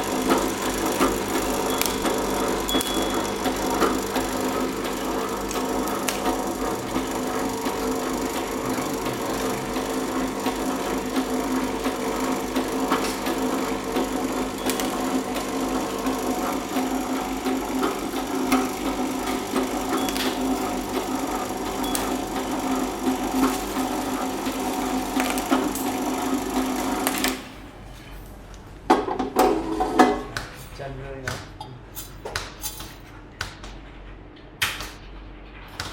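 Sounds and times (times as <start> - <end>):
machine motor hum: 0.0 - 28.2.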